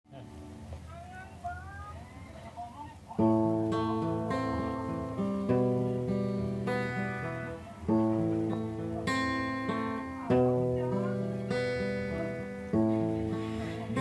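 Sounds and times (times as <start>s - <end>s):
acoustic guitar strumming chords: 3.2s - 14.0s.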